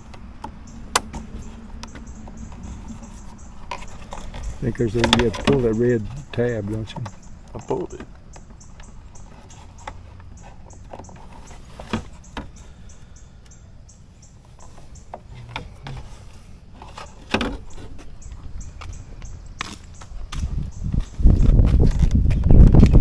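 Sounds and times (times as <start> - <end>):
plastic connectors clicking and knocking: 0.0 - 12.7.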